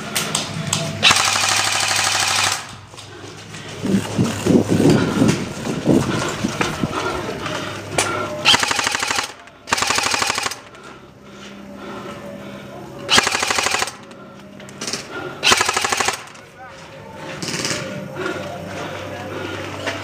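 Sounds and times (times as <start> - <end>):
indistinct low sounds: 0.0 - 20.0
airsoft rifle firing full auto: 1.0 - 2.8, 8.4 - 10.7, 13.1 - 14.0, 14.8 - 16.4.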